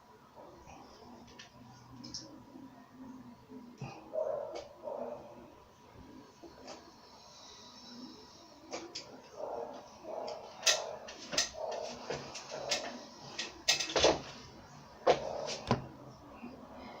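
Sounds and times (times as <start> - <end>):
tools clicking and knocking: 10.3 - 14.2.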